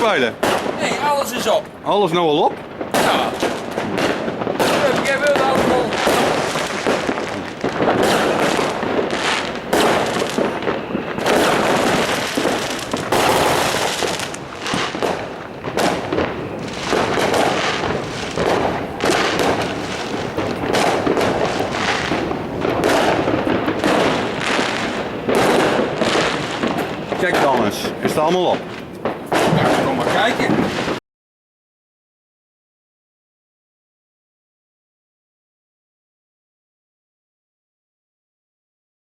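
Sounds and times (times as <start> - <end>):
fireworks bangs and crackles: 0.0 - 31.0.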